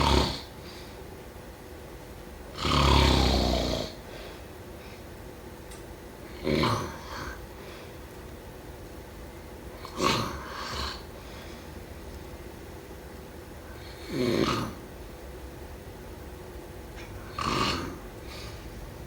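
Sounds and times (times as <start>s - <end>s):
person snoring: 0.0s - 0.5s, 2.6s - 4.0s, 6.3s - 7.4s, 9.8s - 11.1s, 13.7s - 14.8s, 17.2s - 18.6s
quiet breathing: 7.0s - 8.0s, 10.4s - 11.8s, 18.2s - 18.8s.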